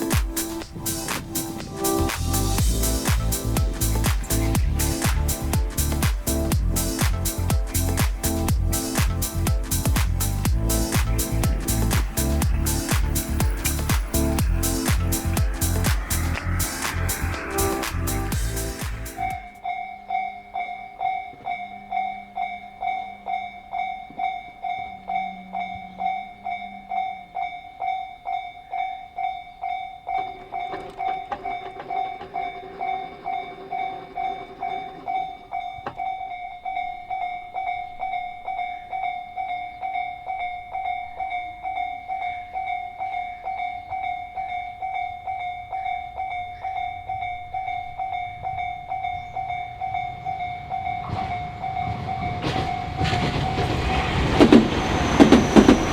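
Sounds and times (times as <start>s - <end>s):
train rumble: 0.0s - 19.7s, 30.1s - 36.1s, 43.0s - 55.9s
level crossing warning bell: 0.0s - 55.9s.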